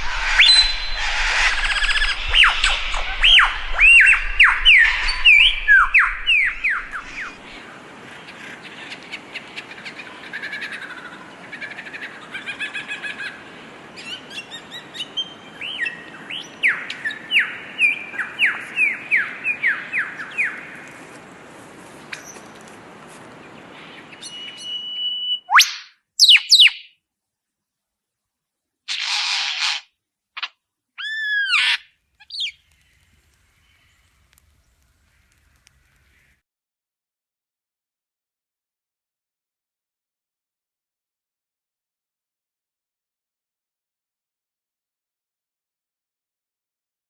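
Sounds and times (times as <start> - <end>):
lyrebird singing: 0.4 - 7.6, 23.7 - 27.0, 31.0 - 36.3.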